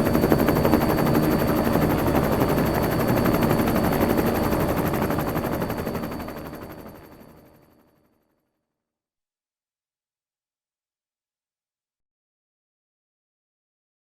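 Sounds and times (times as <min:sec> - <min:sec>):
helicopter rotor chopping: 0:00.0 - 0:07.7.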